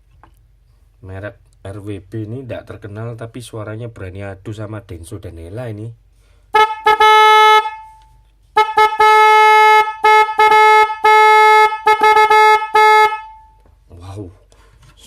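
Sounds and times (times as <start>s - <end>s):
car horn toots: 6.6s - 13.6s.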